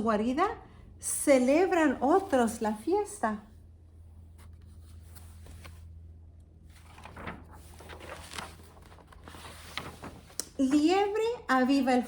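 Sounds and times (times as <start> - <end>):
low room hum: 0.0 - 12.0
book pages rustling: 4.2 - 11.2.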